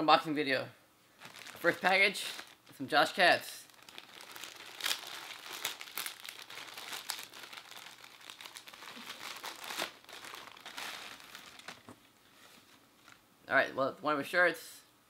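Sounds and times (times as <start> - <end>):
packaging crinkling and tearing: 1.2 - 2.8, 3.6 - 12.0.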